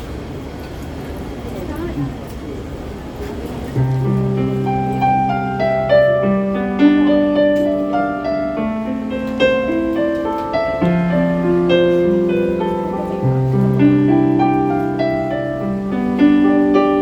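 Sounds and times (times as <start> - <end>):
slow piano ballad: 3.7 - 17.0.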